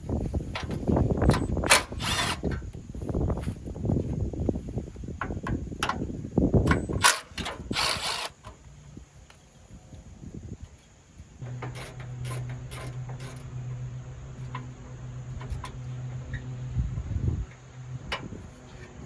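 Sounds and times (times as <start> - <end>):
tools ratcheting and rattling: 0.4 - 2.8, 5.0 - 8.6, 11.4 - 16.4.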